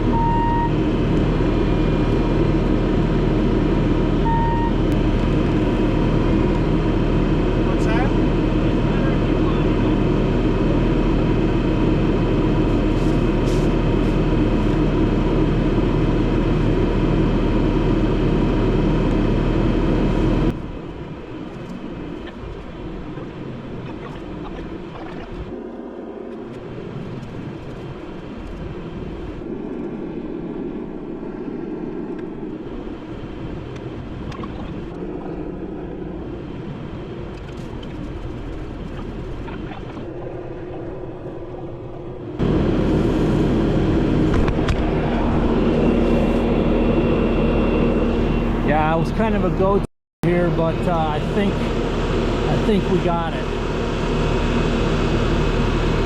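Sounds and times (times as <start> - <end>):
diesel engine running loudly: 0.0 - 24.4, 42.2 - 56.0
distant engine running: 0.0 - 56.0.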